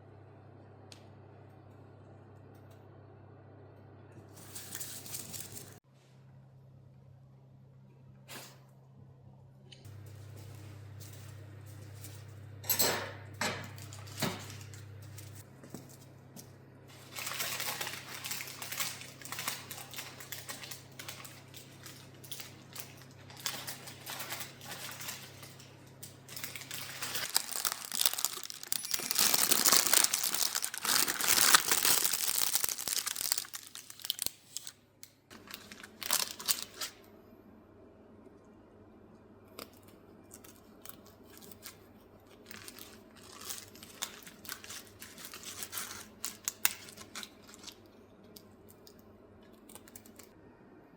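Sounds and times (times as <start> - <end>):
crinkling and rustling: 4.3 - 5.8, 13.7 - 37.0, 39.6 - 50.4.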